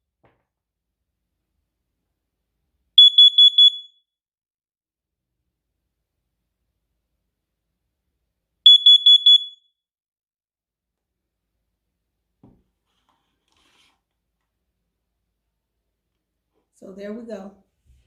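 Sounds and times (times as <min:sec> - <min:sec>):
alarm high-pitched beeps: 0:03.0 - 0:03.9, 0:08.7 - 0:09.6.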